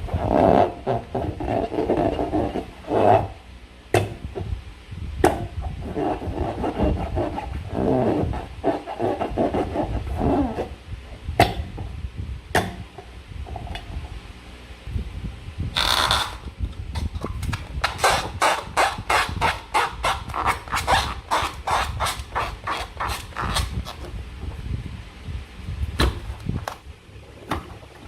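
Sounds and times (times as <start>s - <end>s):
slime rubbing and squishing: 0.0s - 3.4s, 17.0s - 24.0s.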